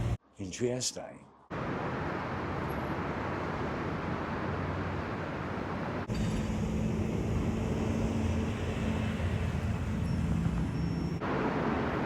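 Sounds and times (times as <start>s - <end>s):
traffic rumble: 0.0s - 0.2s, 1.5s - 12.0s
low hum: 6.0s - 11.6s.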